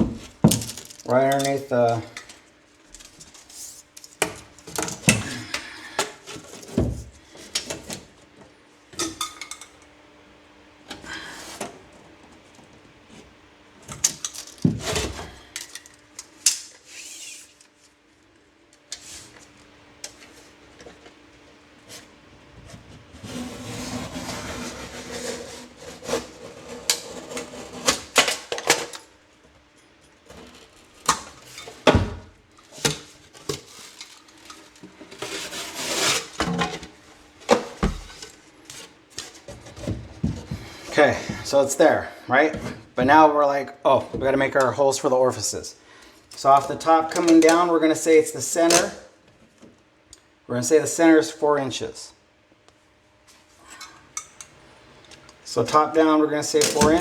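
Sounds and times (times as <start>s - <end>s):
scraping on drywall: 22.8s - 28.2s, 35.1s - 36.9s.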